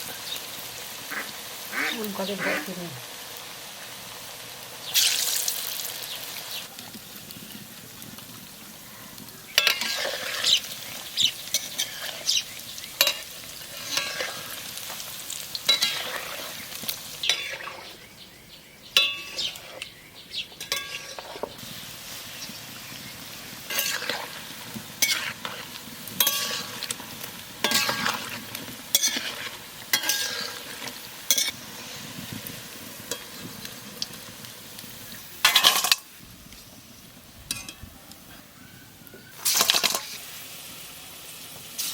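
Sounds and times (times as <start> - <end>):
fritters sizzling in hot oil: 0.0 - 41.9
metal utensil scraping a pan: 9.5 - 10.7, 11.5 - 12.4, 13.0 - 14.9, 15.6 - 18.0, 19.0 - 19.9, 20.6 - 21.6, 23.6 - 31.6, 35.4 - 36.0, 39.4 - 40.3.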